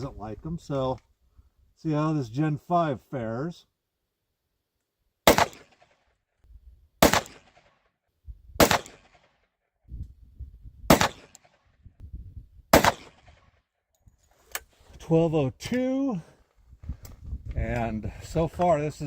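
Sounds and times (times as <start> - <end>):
pistol shots: 5.2 - 6.0, 7.0 - 7.7, 8.6 - 9.3, 10.9 - 11.6, 12.7 - 13.4.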